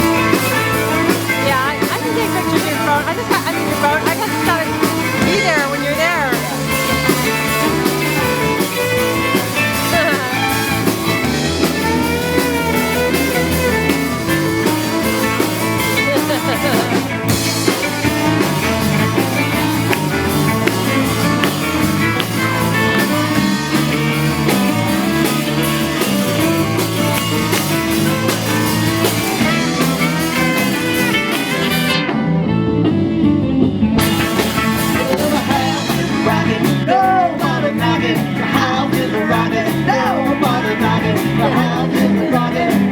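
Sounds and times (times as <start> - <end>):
person singing: 0.0 - 19.9, 34.2 - 42.9
bass line: 0.0 - 42.9
electric guitar: 0.0 - 42.9.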